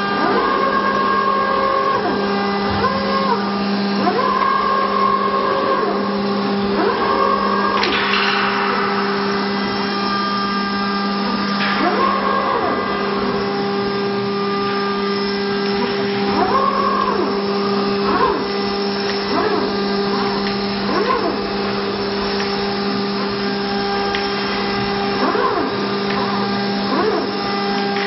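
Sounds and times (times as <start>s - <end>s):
router motor hum: 0.0s - 28.0s
rising and falling whines: 6.9s - 17.4s.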